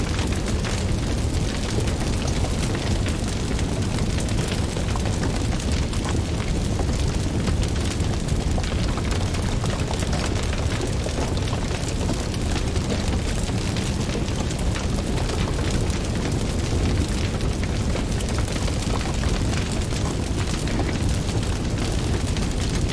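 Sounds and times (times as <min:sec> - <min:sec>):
fire rumbling and crackling: 0:00.0 - 0:22.9.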